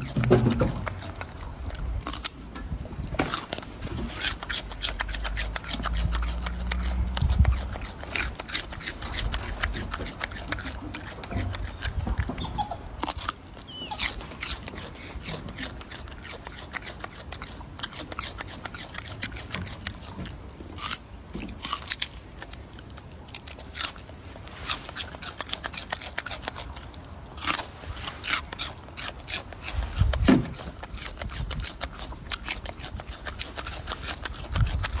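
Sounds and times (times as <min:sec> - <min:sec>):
monkey chewing berries: 0:00.0 - 0:35.0.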